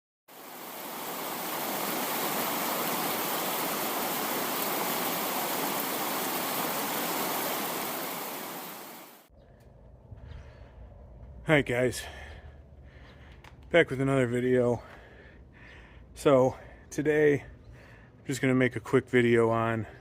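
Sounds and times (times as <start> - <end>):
steady rushing noise: 0.4 - 9.3.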